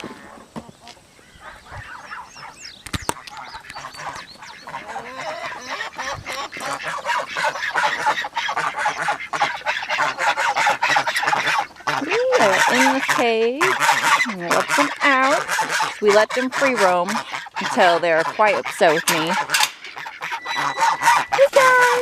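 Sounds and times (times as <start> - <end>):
geese and poultry calling: 0.0 - 22.0.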